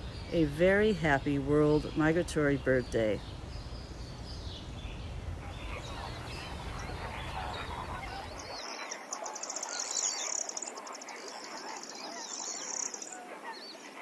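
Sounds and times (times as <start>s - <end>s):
flock of birds calling: 0.0s - 14.0s
high rapid bird trill: 5.4s - 14.0s.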